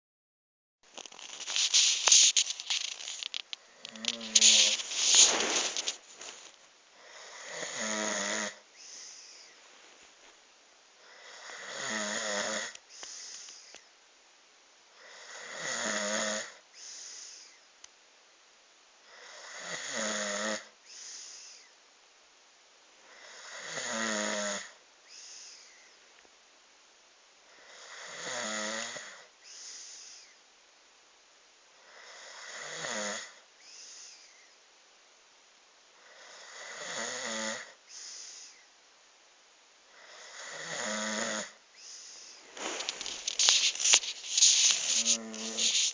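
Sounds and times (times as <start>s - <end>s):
man snoring: 7.0s - 9.2s, 11.0s - 13.3s, 15.0s - 16.6s, 19.1s - 20.7s, 23.1s - 24.7s, 27.5s - 29.2s, 31.9s - 33.4s, 36.0s - 37.8s, 40.0s - 41.6s, 44.4s - 45.9s.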